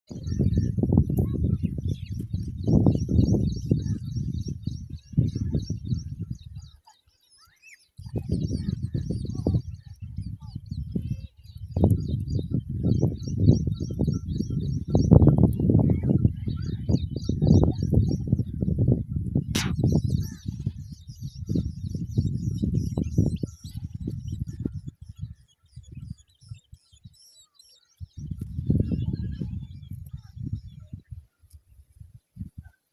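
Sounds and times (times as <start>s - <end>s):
small birds chirping: 0.1s - 32.9s
sharp click: 19.5s - 19.8s.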